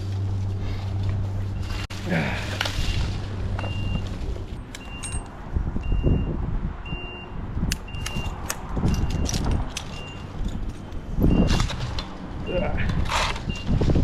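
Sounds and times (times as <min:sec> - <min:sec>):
reversing alarm beeping: 0:02.8 - 0:04.1, 0:05.8 - 0:08.4.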